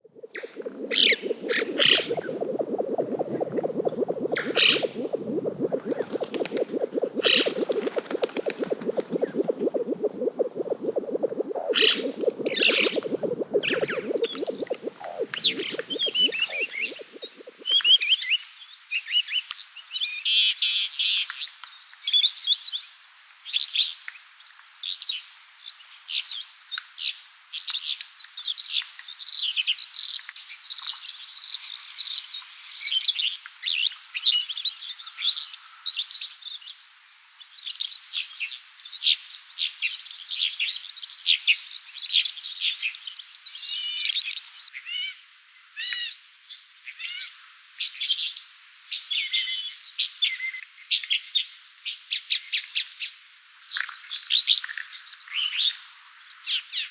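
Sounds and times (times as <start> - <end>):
flock of small birds chirping: 0.3 - 17.9.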